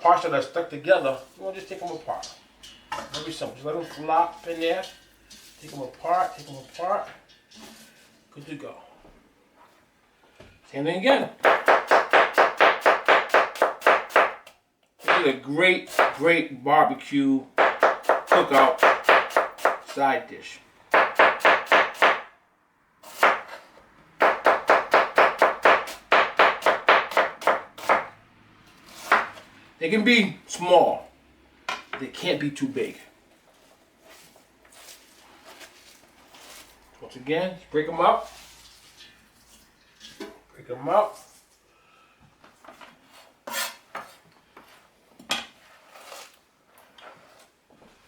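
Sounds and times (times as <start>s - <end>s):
kitchenware clattering: 2.0s - 7.8s
knife chopping cabbage: 11.4s - 15.3s, 15.9s - 16.2s, 17.6s - 20.0s, 20.9s - 22.3s, 23.0s - 23.6s, 24.2s - 28.1s, 28.9s - 29.4s
soft handling noise: 33.3s - 37.0s.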